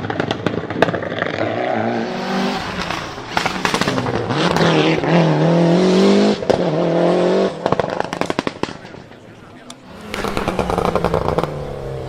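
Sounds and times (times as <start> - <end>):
exhaust pops and crackles: 0.0 - 1.5, 2.8 - 5.1, 7.6 - 11.6
car engine revving: 0.1 - 9.1, 9.8 - 12.0.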